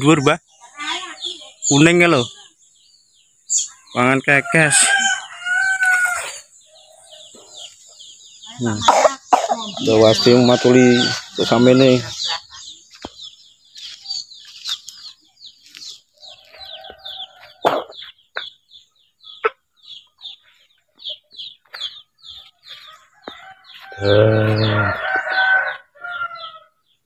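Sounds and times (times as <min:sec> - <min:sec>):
rooster crowing: 0:04.4 - 0:06.4, 0:09.9 - 0:11.8, 0:22.8 - 0:26.7
hen clucks: 0:04.4 - 0:15.2, 0:16.3 - 0:26.4.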